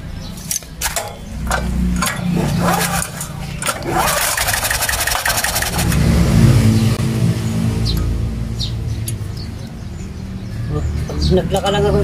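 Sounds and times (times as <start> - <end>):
generator engine cranking and running: 0.5 - 7.0.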